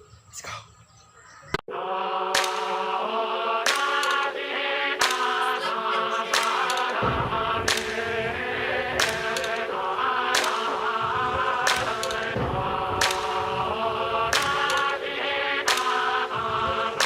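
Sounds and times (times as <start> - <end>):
choir-like chanting voices: 1.2 - 17.0
sharp percussive hit: 2.3 - 2.8, 6.4 - 15.1.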